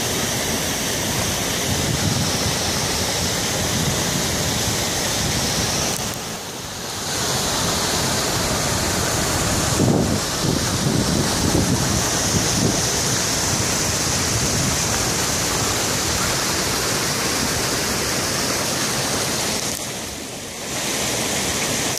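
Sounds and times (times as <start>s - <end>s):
floodwater roaring: 0.0s - 21.9s
wind buffeting microphone: 1.6s - 5.8s, 8.2s - 16.8s.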